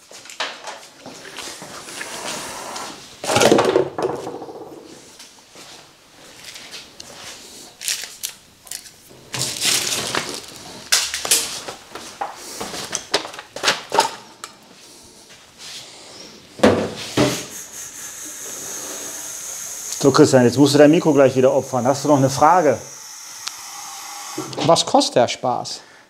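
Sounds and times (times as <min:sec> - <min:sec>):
objects clattering and rustling: 0:03.2 - 0:05.2, 0:07.7 - 0:14.7.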